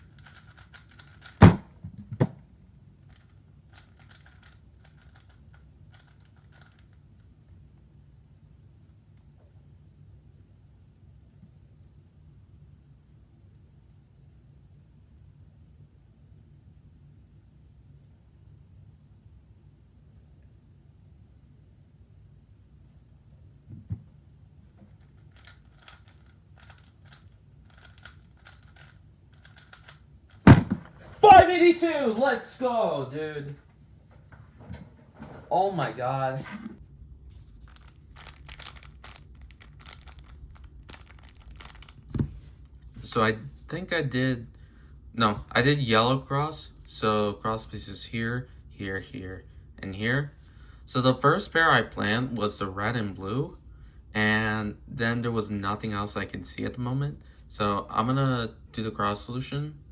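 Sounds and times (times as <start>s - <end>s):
plastic cube clicking: 0.0s - 1.4s, 3.1s - 7.0s, 25.0s - 30.5s, 37.7s - 42.4s.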